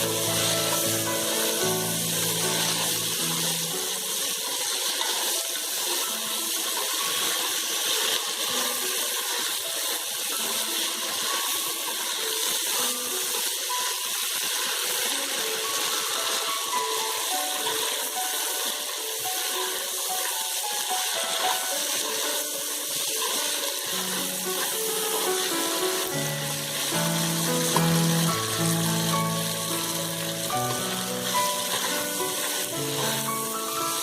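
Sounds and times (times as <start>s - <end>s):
spaghetti sizzling in a pan: 0.0s - 34.0s.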